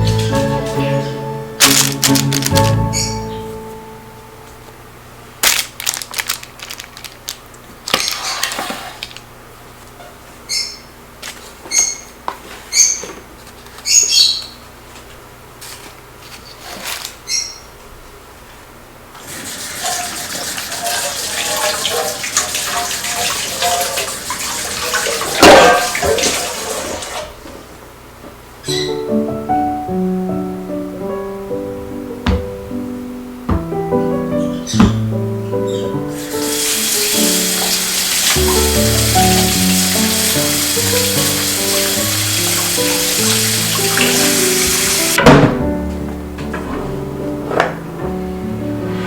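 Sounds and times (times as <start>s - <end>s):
water running from a tap: 19.2s - 27.3s, 36.1s - 45.2s
splash or clatter: 19.4s - 27.2s.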